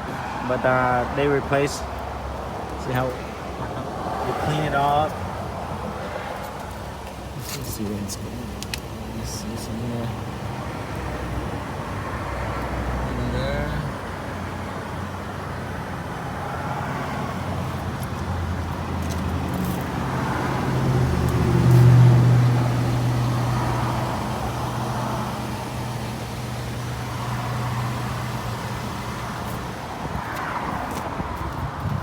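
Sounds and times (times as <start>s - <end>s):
vehicle engine running: 13.0s - 30.2s.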